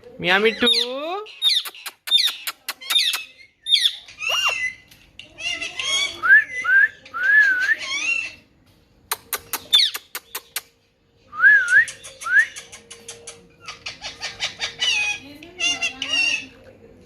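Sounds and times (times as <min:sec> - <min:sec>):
parrot sharp clicks: 0:09.1 - 0:10.7.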